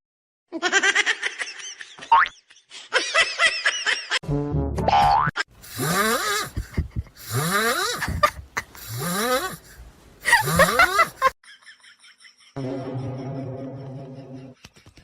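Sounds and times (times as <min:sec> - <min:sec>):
animal rasping wheezy calls: 0:05.7 - 0:11.3.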